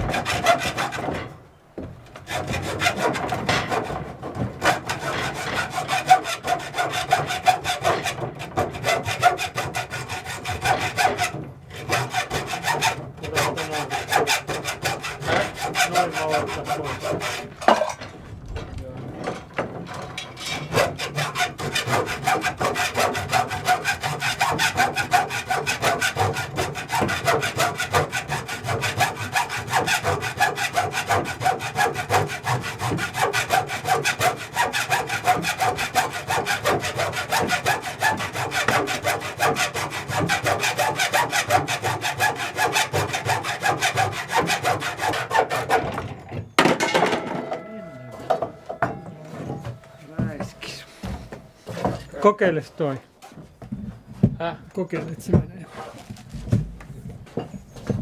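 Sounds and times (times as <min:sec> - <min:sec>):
wood being sawn: 0:00.0 - 0:01.3, 0:02.2 - 0:52.9.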